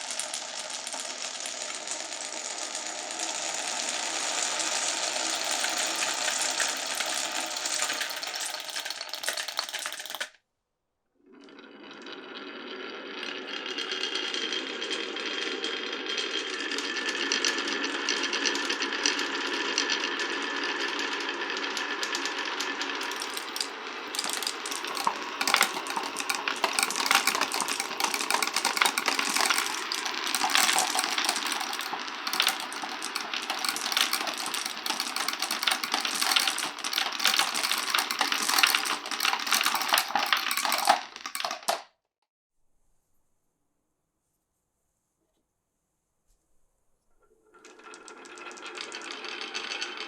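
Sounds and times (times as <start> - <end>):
marbles clicking and knocking: 0.0 - 10.3, 23.0 - 41.9, 47.6 - 50.0
marbles rolling on wood: 0.0 - 10.4, 11.3 - 16.9, 23.0 - 41.9, 47.6 - 50.0.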